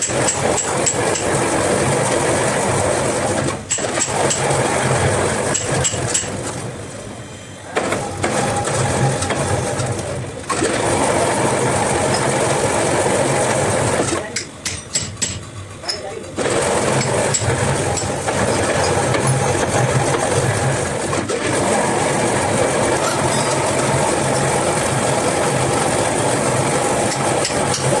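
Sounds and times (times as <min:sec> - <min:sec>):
workshop machine rattling: 0:00.0 - 0:28.0.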